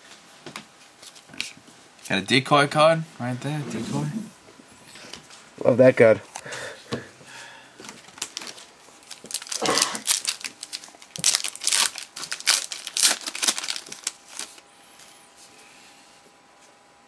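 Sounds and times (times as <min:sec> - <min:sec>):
wrapper crinkling: 0:07.8 - 0:14.6.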